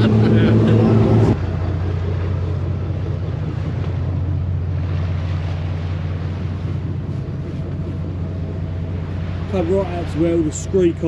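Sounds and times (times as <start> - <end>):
boat engine droning: 0.0 - 11.0
wind and water rushing: 0.0 - 11.0.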